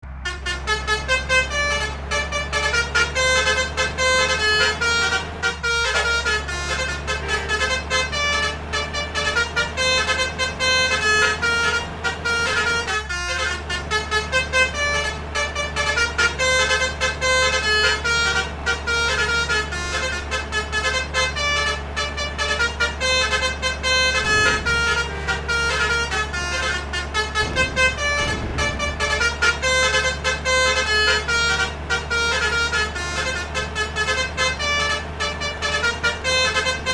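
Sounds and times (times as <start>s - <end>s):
low engine hum: 0.0s - 36.9s
multi-trumpet bus horns melody: 0.1s - 36.9s.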